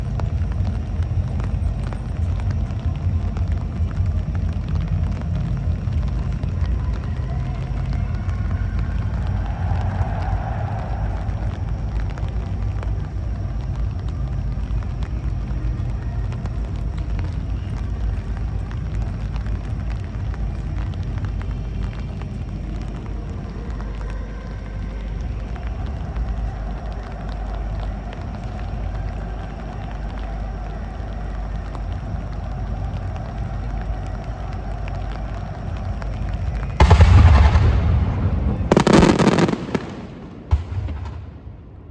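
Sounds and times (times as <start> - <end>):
faint fireworks crackles: 0.0 - 41.9
fireworks booming: 35.7 - 41.9.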